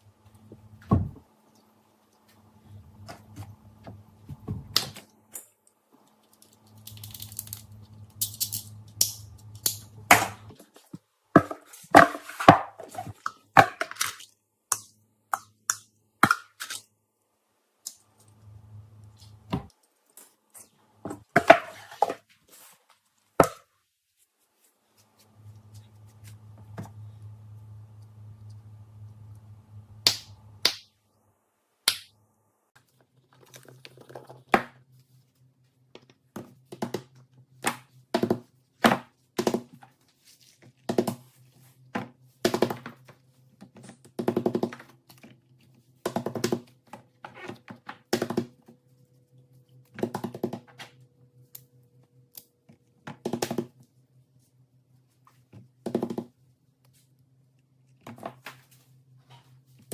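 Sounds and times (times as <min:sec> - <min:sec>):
faint low hum: 0:24.1 - 0:42.4.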